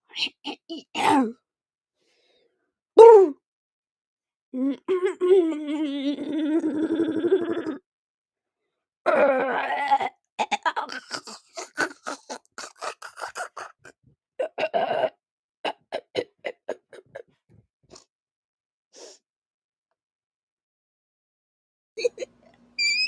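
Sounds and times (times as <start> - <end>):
girl clearing her throat: 0.5 - 1.4.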